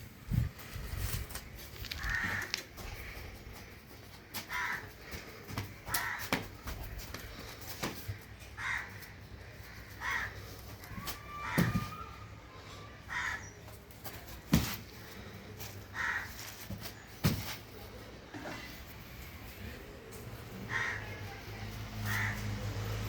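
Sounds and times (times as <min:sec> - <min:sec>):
bird giving harsh caw-like calls: 0:01.9 - 0:03.2, 0:04.5 - 0:05.2, 0:05.9 - 0:06.4, 0:08.6 - 0:12.1, 0:13.1 - 0:13.6, 0:15.9 - 0:16.5, 0:20.7 - 0:21.4, 0:22.0 - 0:22.5.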